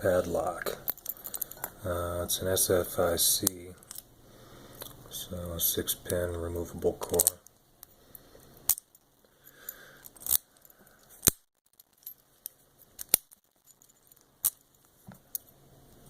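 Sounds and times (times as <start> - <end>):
padlock metallic clicks: 13.0 - 13.4.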